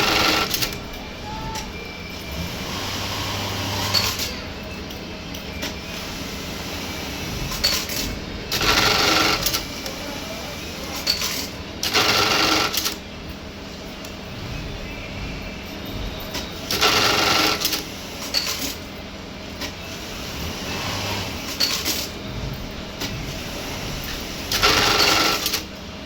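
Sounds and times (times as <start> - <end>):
sewing machine stitching: 0.0 - 0.8, 2.4 - 4.4, 7.5 - 10.0, 10.9 - 13.0, 16.7 - 18.7, 20.2 - 22.2, 23.0 - 25.7.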